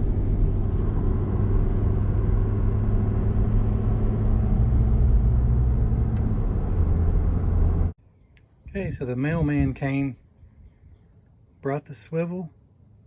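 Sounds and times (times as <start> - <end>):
road rumble: 0.0 - 8.0
vehicle engine hum: 0.0 - 8.0.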